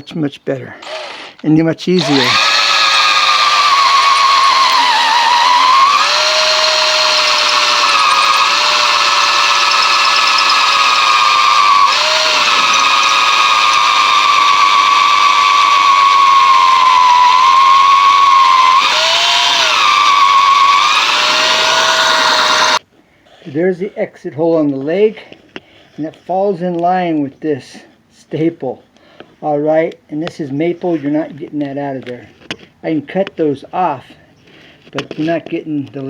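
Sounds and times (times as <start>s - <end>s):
cordless drill boring through wood: 0.8s - 1.4s, 2.0s - 22.8s.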